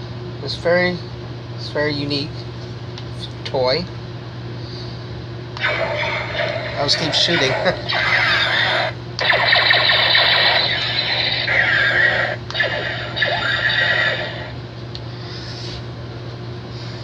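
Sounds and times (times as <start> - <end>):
toy laser gun zapping: 5.6 - 14.6.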